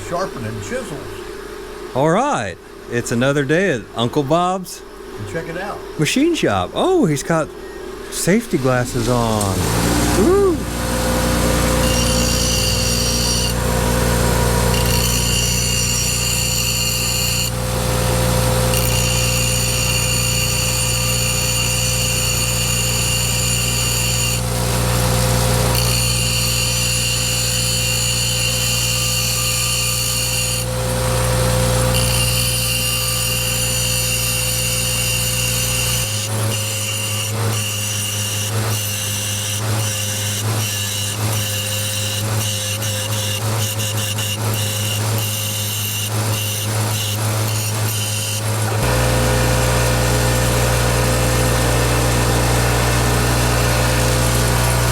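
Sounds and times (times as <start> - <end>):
grinder motor whine: 7.6 - 54.9
chisel grinding hiss: 11.2 - 54.9.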